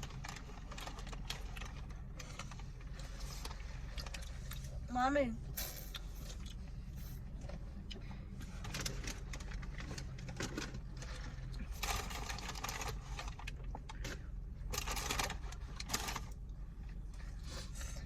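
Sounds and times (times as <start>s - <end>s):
packaging crinkling and rustling: 0.0s - 4.4s, 8.6s - 13.7s, 14.7s - 16.4s
chewing: 0.2s - 4.8s, 5.6s - 8.0s.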